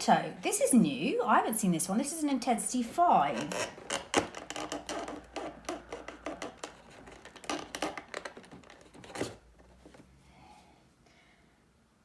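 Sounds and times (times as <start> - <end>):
cardboard box clicks and rustles: 3.6 - 10.1.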